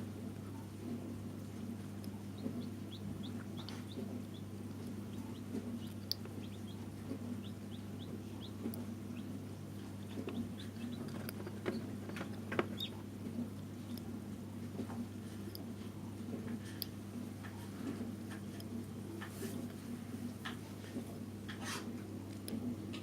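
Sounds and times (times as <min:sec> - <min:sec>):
steady low hum: 0:00.0 - 0:23.0
chicks peeping: 0:01.6 - 0:14.2.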